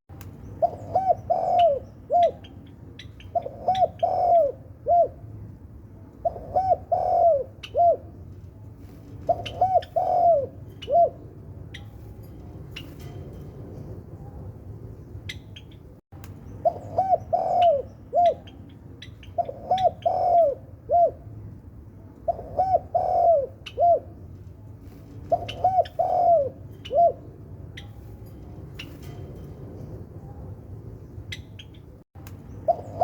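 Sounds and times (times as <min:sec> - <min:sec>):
dove cooing: 0:00.6 - 0:05.3, 0:06.2 - 0:08.2, 0:09.2 - 0:11.3, 0:16.6 - 0:18.6, 0:19.2 - 0:21.3, 0:22.2 - 0:24.2, 0:25.2 - 0:27.3, 0:32.7 - 0:33.0.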